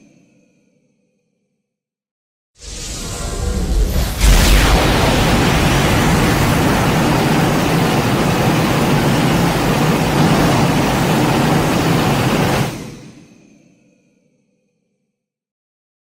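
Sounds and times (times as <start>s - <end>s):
loud steady rushing noise: 2.6s - 13.2s.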